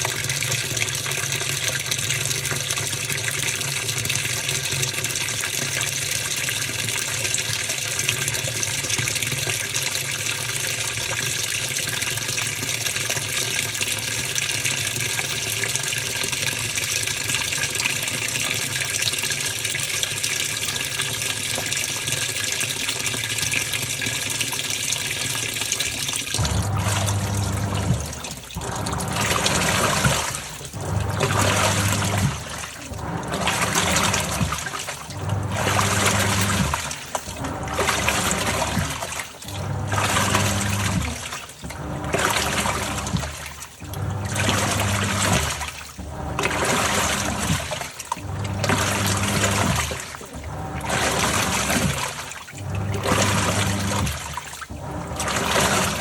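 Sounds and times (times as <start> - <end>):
washing machine agitator motor hum: 0.0 - 56.0
water running into washing machine: 0.0 - 56.0
sloshing water: 21.5 - 56.0.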